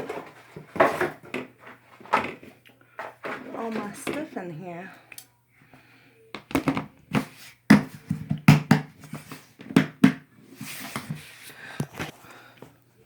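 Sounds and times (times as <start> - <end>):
objects knocking into a container: 6.4 - 7.0.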